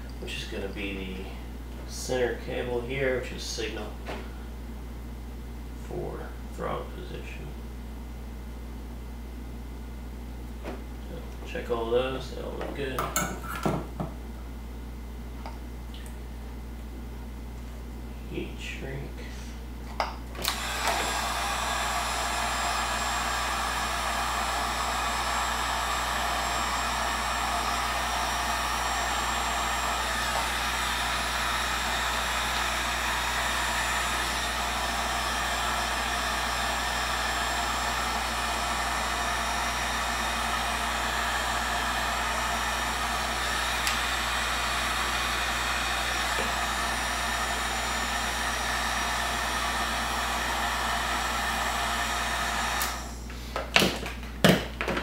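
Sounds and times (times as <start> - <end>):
heat gun blowing air: 20.4 - 53.8.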